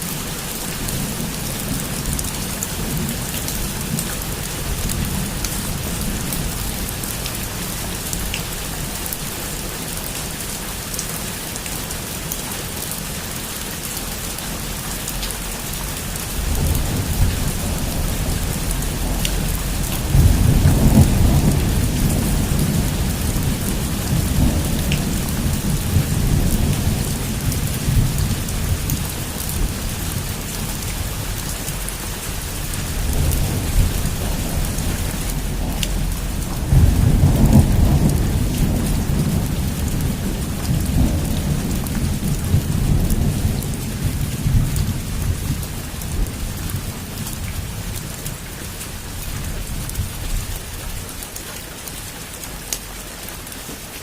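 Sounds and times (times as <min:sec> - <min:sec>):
heavy rain on a roof: 0:00.0 - 0:54.0
thunder rumbling: 0:16.0 - 0:51.0.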